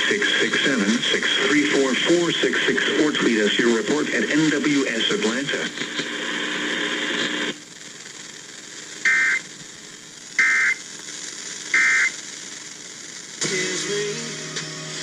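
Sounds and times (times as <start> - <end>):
radio static: 0.0 - 13.6
digital data tone bursts: 9.0 - 9.4, 10.4 - 10.8, 11.7 - 12.2.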